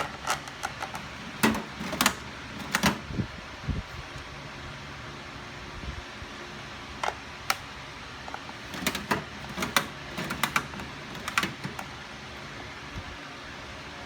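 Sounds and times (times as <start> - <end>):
metal toolbox parts clicking: 0.0 - 3.1, 8.3 - 11.9
fan hum: 0.0 - 14.0.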